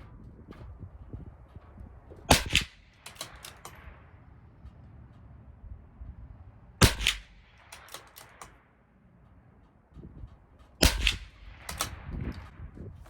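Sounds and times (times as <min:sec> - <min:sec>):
low wind rumble: 0:00.0 - 0:13.0
rifle bolt clicks: 0:02.3 - 0:04.0, 0:06.8 - 0:08.6, 0:10.8 - 0:12.5
rifle shots: 0:02.3 - 0:04.2, 0:06.8 - 0:08.6, 0:10.8 - 0:12.6.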